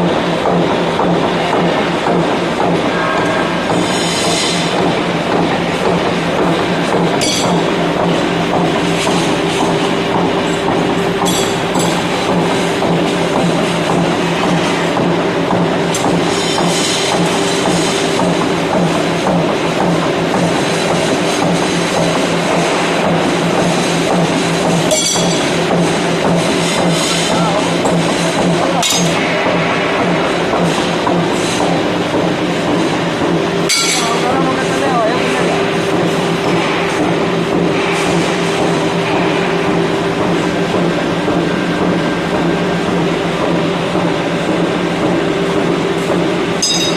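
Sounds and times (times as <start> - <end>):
low pulsing hum: 0.0 - 46.9
power hammer clattering: 24.1 - 28.0, 33.7 - 34.5, 46.6 - 46.9.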